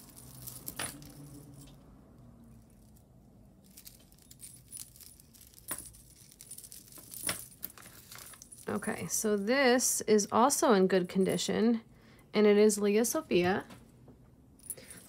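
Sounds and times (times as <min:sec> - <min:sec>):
jewelry clinking: 0:00.0 - 0:09.8, 0:14.6 - 0:15.0.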